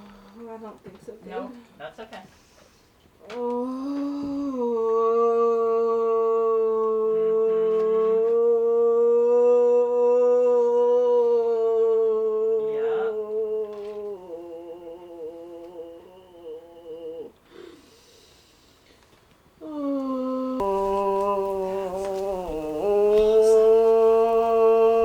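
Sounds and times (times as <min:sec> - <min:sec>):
woman humming: 0:03.3 - 0:10.6, 0:19.6 - 0:25.0.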